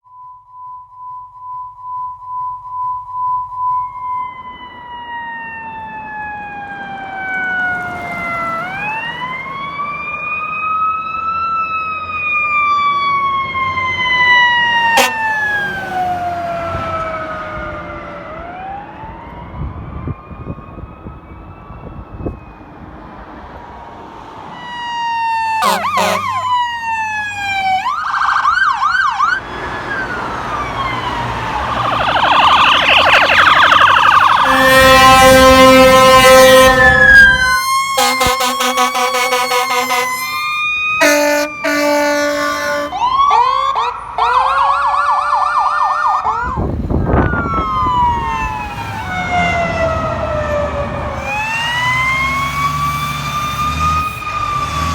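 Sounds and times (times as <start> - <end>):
fire engine siren wailing and yelping: 3.4 - 23.6, 24.4 - 54.9.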